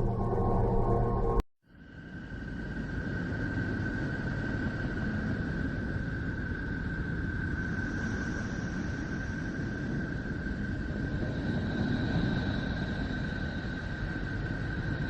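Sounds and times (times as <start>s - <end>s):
low rushing noise: 0.0s - 1.4s
thin high tone: 0.0s - 1.4s.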